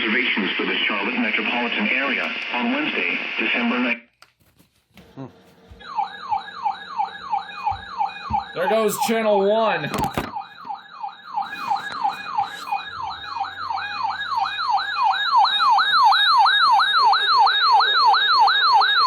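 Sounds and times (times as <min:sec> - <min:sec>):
warbling electronic alert siren: 0:05.8 - 0:19.0.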